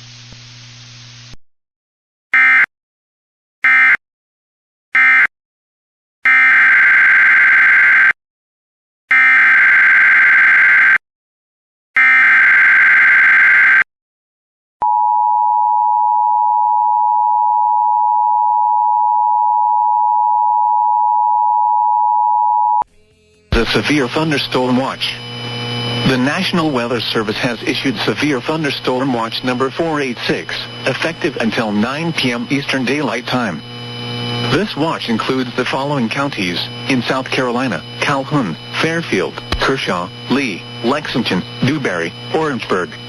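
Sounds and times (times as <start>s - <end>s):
buzzy data bursts: 22.9s - 43.0s.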